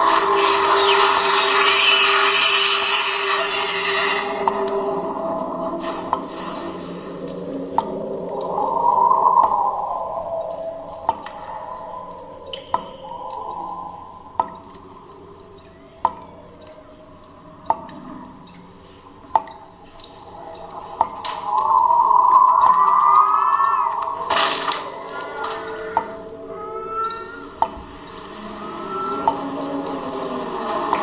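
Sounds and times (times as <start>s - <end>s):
eerie horror drone: 0.0s - 31.0s
water drops falling: 4.3s - 28.4s, 29.1s - 29.6s.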